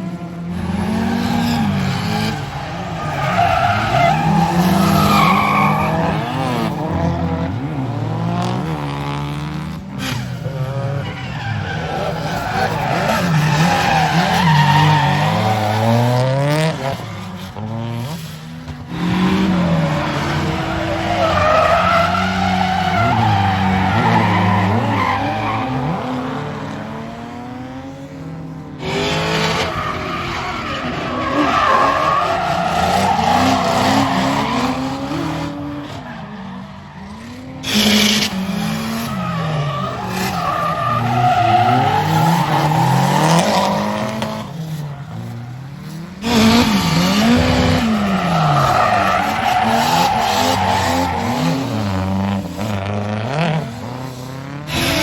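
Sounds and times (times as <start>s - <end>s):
car engines revving hard: 0.0s - 55.0s
tyre squeal: 46.2s - 52.7s.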